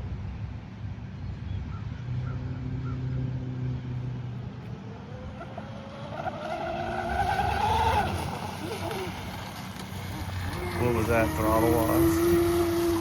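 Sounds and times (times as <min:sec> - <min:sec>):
low wind rumble: 0:00.0 - 0:13.0
electric motor whining: 0:10.4 - 0:13.0.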